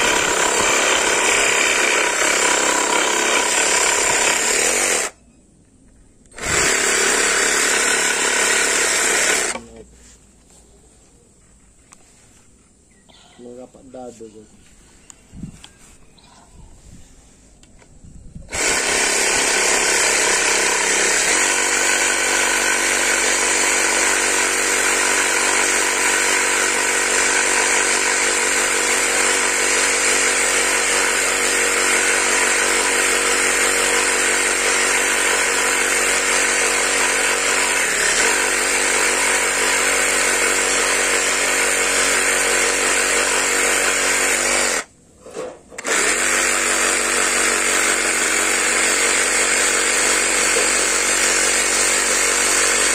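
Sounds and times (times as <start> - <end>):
electric saw cutting wood: 0.0 - 5.2, 6.3 - 9.8, 18.5 - 44.9, 45.8 - 52.9.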